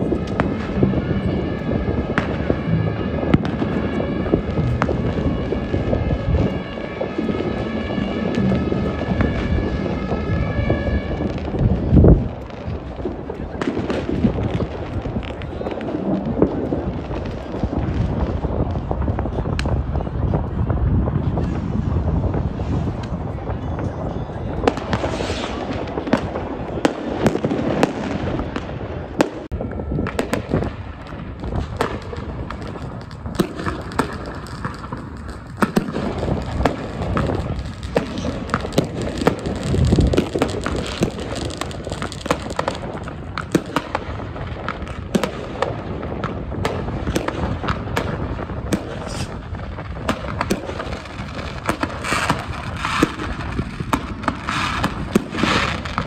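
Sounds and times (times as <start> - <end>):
low rumble: 0.0 - 13.1
fireworks bangs and crackles: 0.0 - 56.0
heavy firework boom: 0.0 - 56.0.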